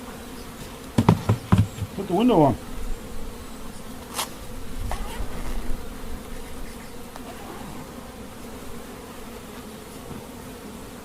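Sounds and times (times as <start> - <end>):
honeybees buzzing: 0.0 - 11.0
faint knocks of hive boxes: 0.4 - 2.3, 9.5 - 10.6.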